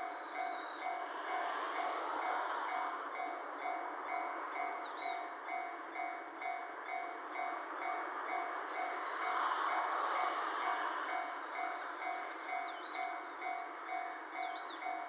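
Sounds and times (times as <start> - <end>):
brief high squeals: 8.8 - 9.4, 12.1 - 14.9.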